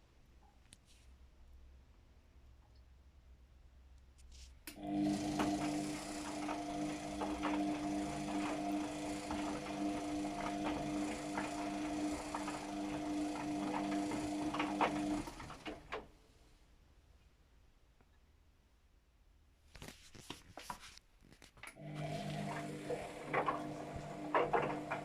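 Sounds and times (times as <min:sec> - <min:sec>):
washing machine motor hum: 0:04.8 - 0:16.0, 0:21.8 - 0:25.0
washing machine clicks: 0:04.8 - 0:16.1, 0:22.0 - 0:25.0.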